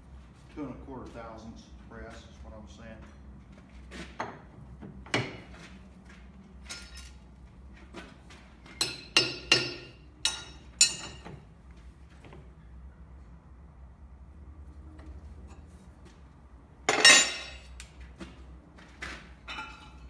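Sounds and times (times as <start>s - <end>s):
metal tools clinking: 6.7s - 7.2s, 8.8s - 11.3s, 16.9s - 17.8s, 19.5s - 20.0s.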